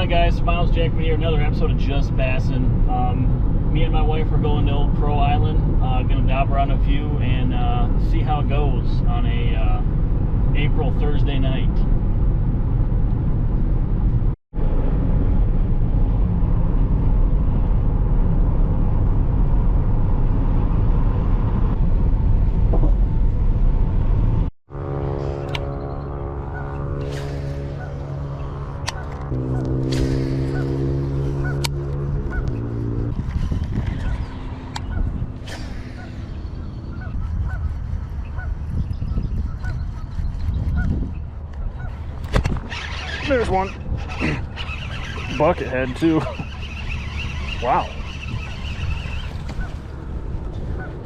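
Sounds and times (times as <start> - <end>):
vehicle rumble from inside: 0.0 - 51.0
steady tonal hum: 24.7 - 33.1
geese honking: 42.7 - 49.9.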